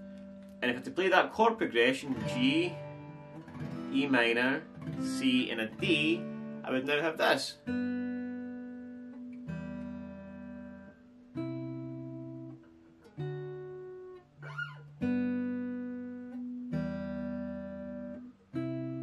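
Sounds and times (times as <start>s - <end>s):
guitar chords plucked: 0.0s - 19.0s
guitar string squeak: 14.4s - 14.9s.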